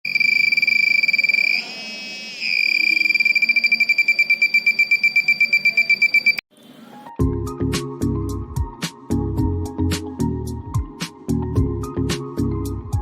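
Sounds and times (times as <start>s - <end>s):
piezo buzzer tone and beeping: 0.0s - 6.4s.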